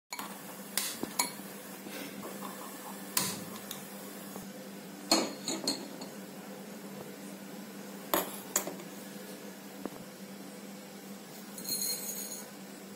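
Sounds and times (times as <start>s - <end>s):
utensils and pot clinking: 5.1s - 6.1s, 11.6s - 12.5s.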